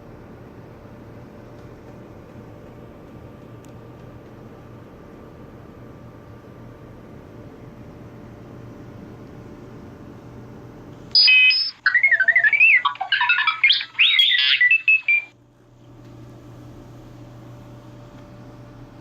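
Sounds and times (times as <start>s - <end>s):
steady low hum: 0.0s - 19.0s
warbling electronic chirps and beeps: 11.2s - 15.3s.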